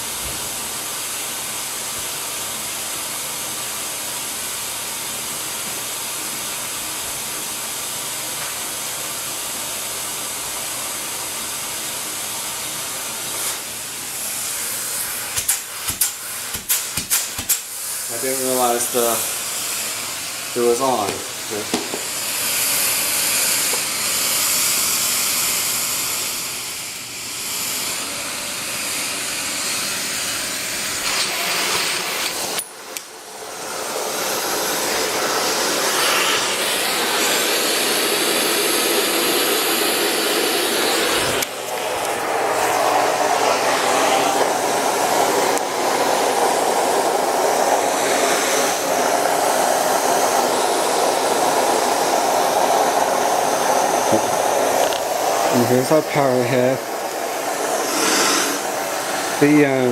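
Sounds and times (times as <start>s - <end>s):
vacuum suction rush: 17.6s - 59.9s.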